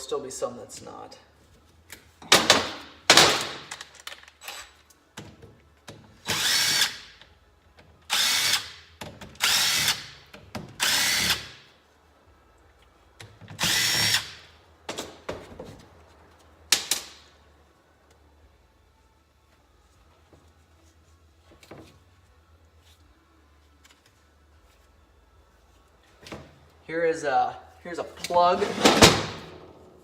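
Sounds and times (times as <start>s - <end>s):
power drill whirring: 6.3s - 7.0s, 10.8s - 11.5s, 13.6s - 14.4s.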